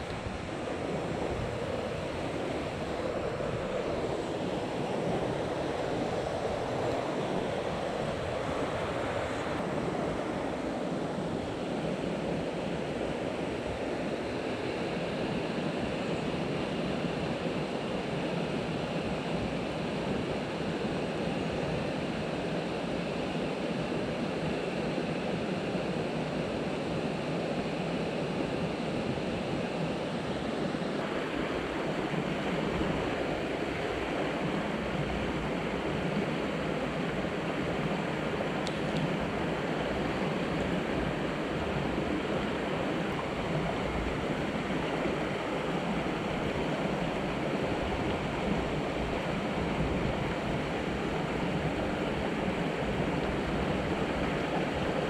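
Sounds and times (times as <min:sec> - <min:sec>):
stream rushing over rocks: 0:00.0 - 0:10.8, 0:31.0 - 0:55.0.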